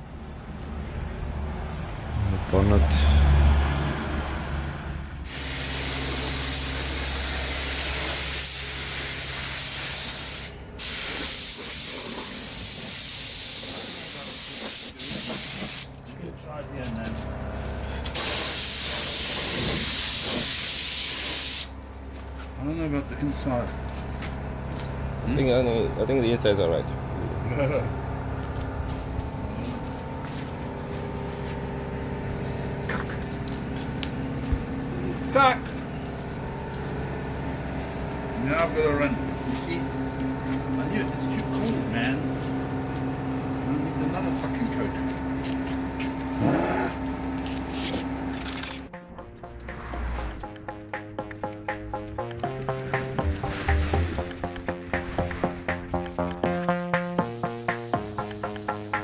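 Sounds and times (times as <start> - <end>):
paint spray gun hissing: 5.3 - 15.9, 18.1 - 21.7, 57.1 - 59.0
machine hum: 21.7 - 43.9, 48.0 - 59.0
constant hiss: 57.2 - 59.0.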